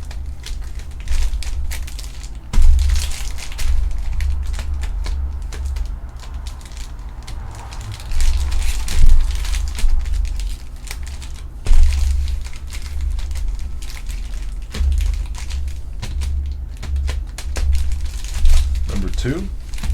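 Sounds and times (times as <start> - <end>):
foil wrappers crinkling: 0.0 - 19.9
handling bumps and thumps: 0.0 - 19.9.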